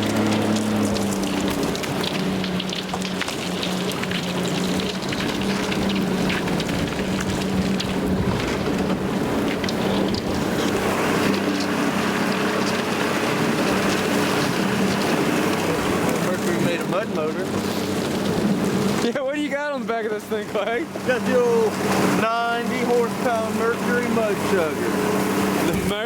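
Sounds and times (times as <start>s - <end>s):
scattered ticks: 0.0s - 16.4s
outboard motor running: 0.0s - 26.0s.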